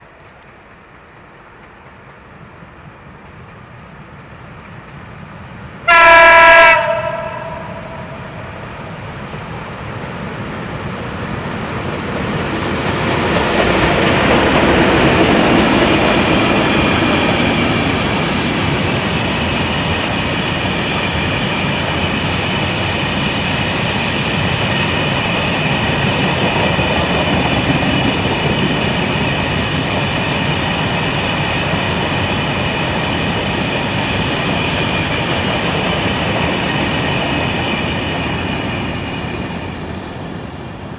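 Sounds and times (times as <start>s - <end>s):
freight wagons rumbling on rail: 0.0s - 40.9s
locomotive horn blast: 5.9s - 8.3s.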